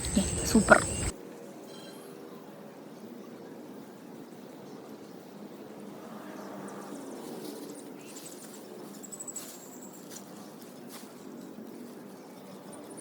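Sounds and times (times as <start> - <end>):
low background murmur: 0.0 - 1.1.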